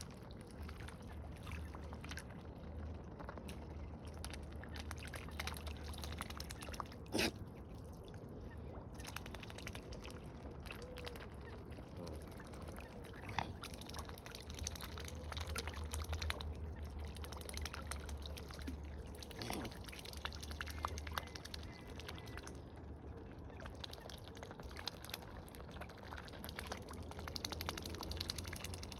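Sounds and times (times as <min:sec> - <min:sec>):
water splashing and dripping: 0:00.0 - 0:28.9
faint waterfowl calls: 0:17.7 - 0:24.3.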